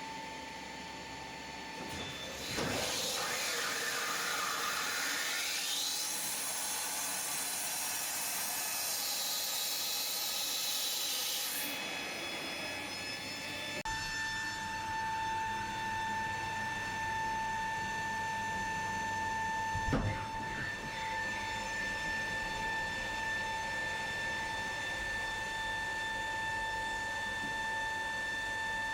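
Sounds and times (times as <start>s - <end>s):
hydraulic system hiss and whine: 1.8s - 5.7s.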